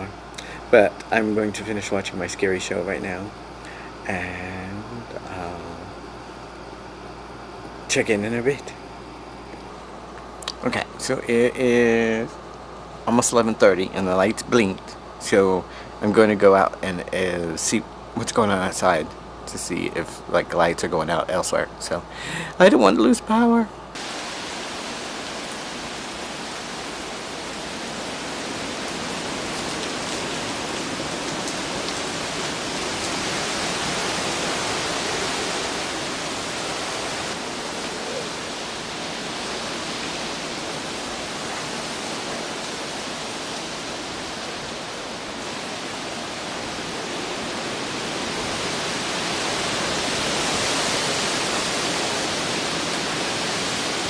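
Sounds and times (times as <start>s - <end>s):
strong wind and rain: 0.0s - 6.1s, 23.5s - 54.0s.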